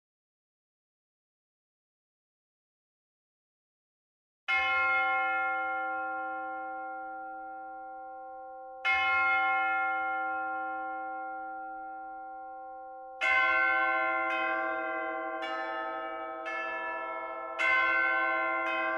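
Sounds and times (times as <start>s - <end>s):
church bell tolling: 4.5s - 18.9s.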